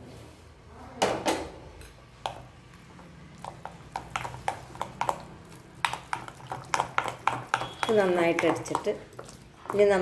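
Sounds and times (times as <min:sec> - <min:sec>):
utensil knocking against mixing bowl: 0:03.9 - 0:10.0.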